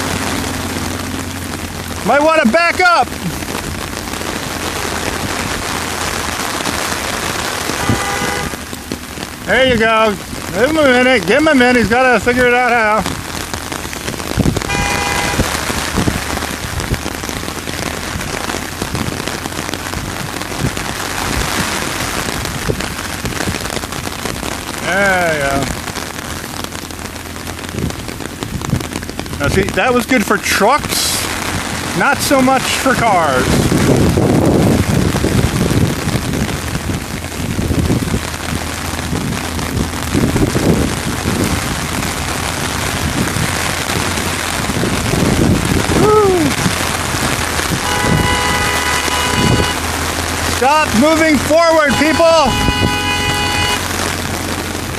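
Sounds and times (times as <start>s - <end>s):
low rumbling: 0.0s - 54.9s
rain pattering on umbrella: 0.0s - 54.9s
car horn beep: 7.5s - 8.9s, 14.6s - 16.0s, 47.8s - 49.9s, 51.1s - 54.0s.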